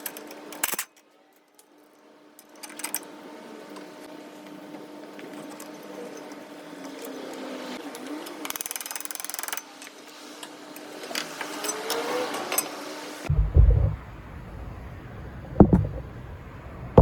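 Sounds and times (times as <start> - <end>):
mechanical hum: 0.0 - 8.6, 9.7 - 17.0
rapid mechanical rattle: 13.3 - 17.0.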